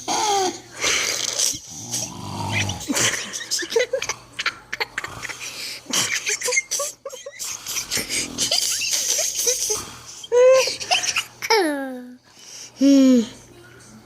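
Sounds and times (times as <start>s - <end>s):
man snoring: 1.2s - 2.9s, 7.7s - 8.8s.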